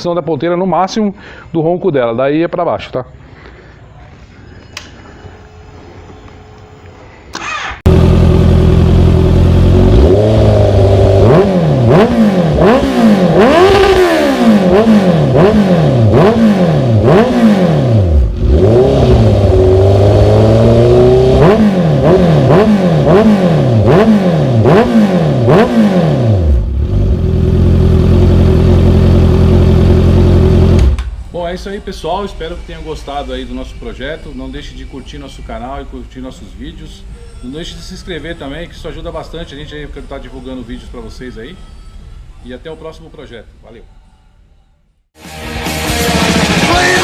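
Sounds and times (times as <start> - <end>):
motorcycle engine revving: 7.4 - 31.2
motorcycle engine idling: 7.9 - 11.2, 26.6 - 31.2.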